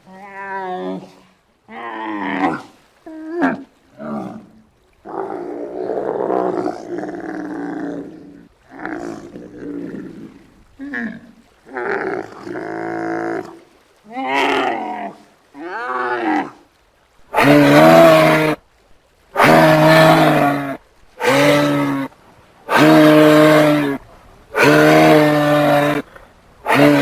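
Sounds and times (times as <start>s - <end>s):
giraffe calling: 22.7s - 27.0s.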